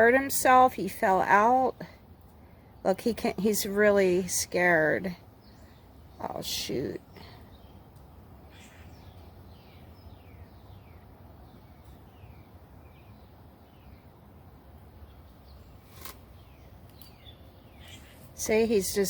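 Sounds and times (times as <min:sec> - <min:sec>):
outdoor background: 0:00.0 - 0:19.0
birds calling: 0:04.6 - 0:14.2, 0:14.8 - 0:19.0.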